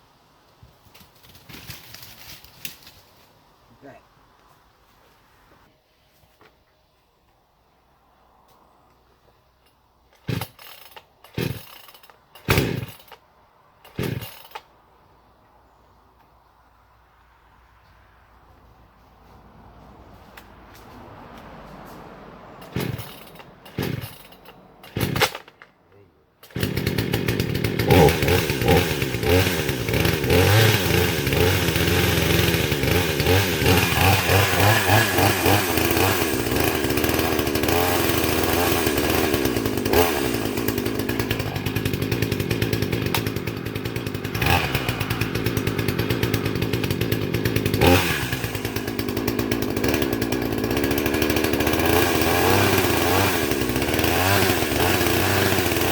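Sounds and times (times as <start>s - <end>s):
chainsaw engine revving: 10.2s - 13.2s, 13.8s - 14.7s, 22.5s - 25.6s, 26.4s - 55.9s.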